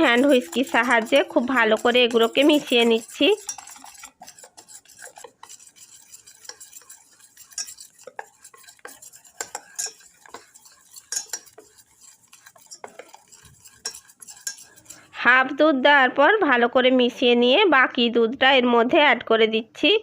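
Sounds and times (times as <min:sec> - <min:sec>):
whisk clinking against saucepan: 0:00.0 - 0:15.2.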